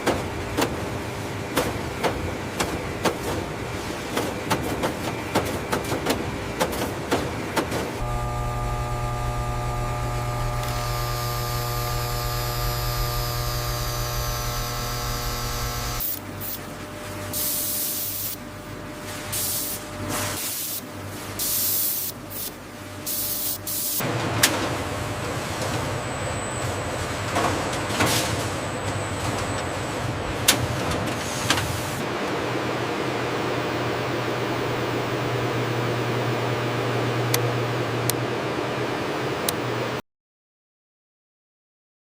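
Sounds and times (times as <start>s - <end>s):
machine hum with held tones: 8.0s - 16.9s.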